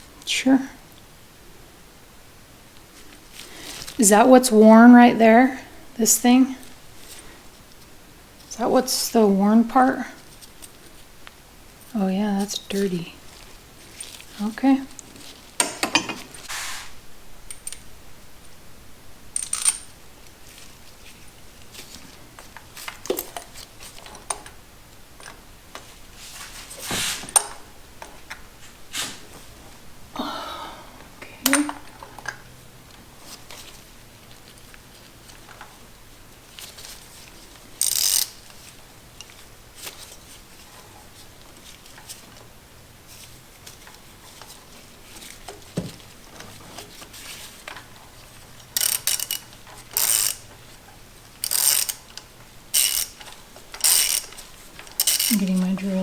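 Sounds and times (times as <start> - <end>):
hand tools clinking and rattling: 13.3 - 16.6, 19.3 - 29.3, 31.3 - 35.8, 43.1 - 56.0
short rustling hisses: 16.4 - 17.1, 26.1 - 27.4, 28.6 - 29.6.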